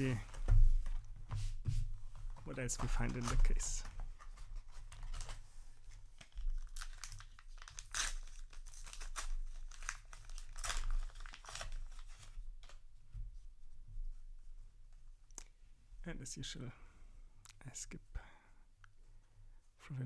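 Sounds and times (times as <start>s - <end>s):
plastic wrappers tearing and crinkling: 3.1s - 12.8s.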